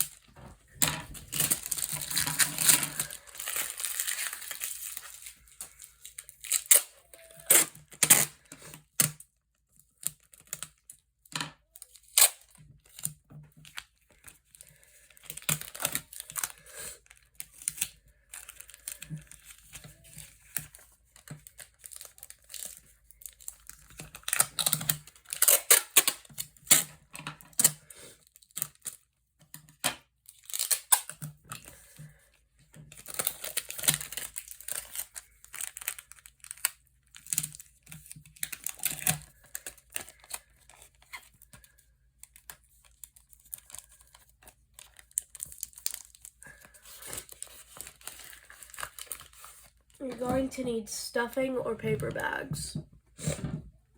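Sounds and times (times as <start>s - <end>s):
paper crinkling and tearing: 0.8s - 8.5s, 13.7s - 26.9s, 32.9s - 50.0s.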